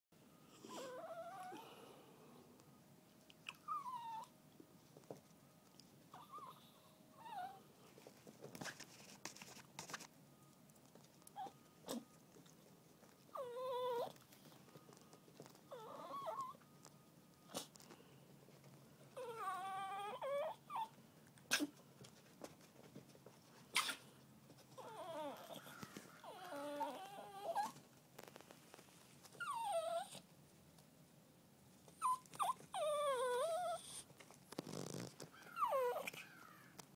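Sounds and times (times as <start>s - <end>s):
dogs whining: 0.5s - 1.8s, 3.4s - 4.4s, 6.1s - 7.7s, 11.3s - 12.2s, 13.0s - 14.6s, 15.4s - 16.7s, 19.1s - 21.7s, 24.7s - 27.8s, 29.3s - 30.3s, 31.9s - 36.7s.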